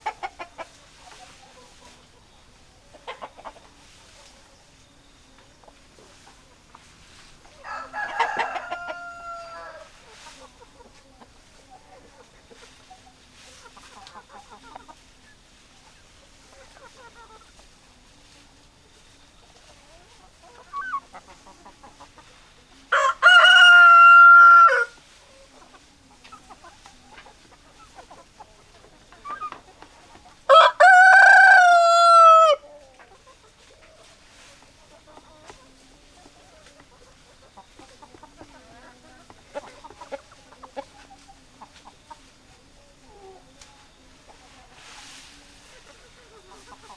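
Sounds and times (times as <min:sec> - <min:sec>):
hens clucking softly: 0:00.0 - 0:46.9
rooster crowing: 0:07.6 - 0:09.9, 0:22.9 - 0:25.0, 0:30.5 - 0:32.6.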